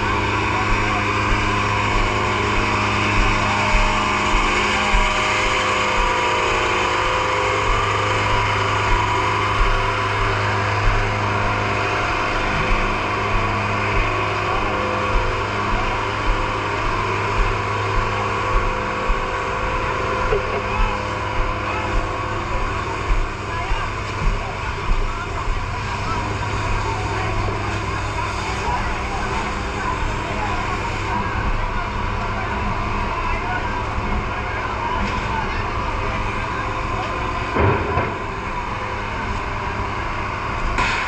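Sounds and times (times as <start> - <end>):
dull low thumps: 0.0 - 27.6
engine humming: 0.0 - 41.0.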